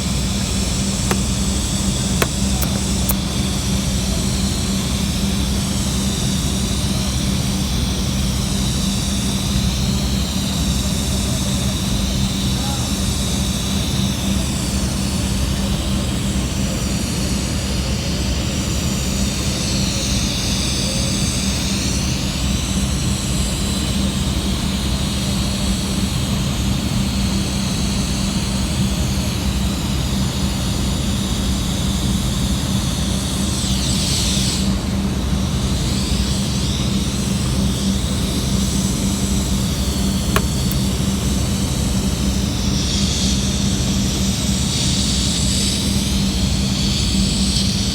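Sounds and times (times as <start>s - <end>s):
short click: 2.2s - 3.2s, 40.3s - 40.9s.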